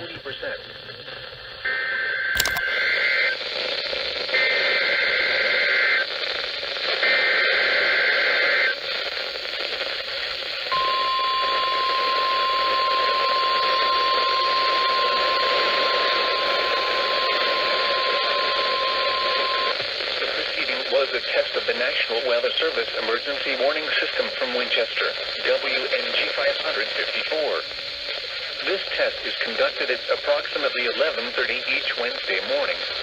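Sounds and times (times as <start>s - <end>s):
radio receiver hiss: 2.3s - 33.0s
steady warning alarm tone: 10.7s - 19.7s.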